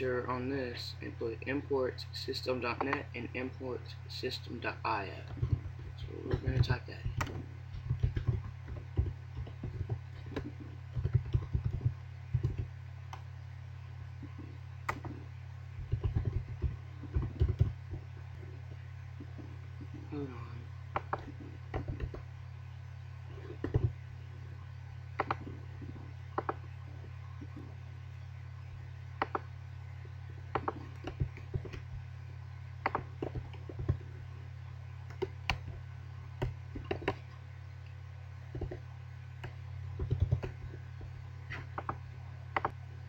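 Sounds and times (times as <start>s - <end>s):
steady low hum: 0.0s - 43.0s
keyboard keys clicking: 39.4s - 40.6s.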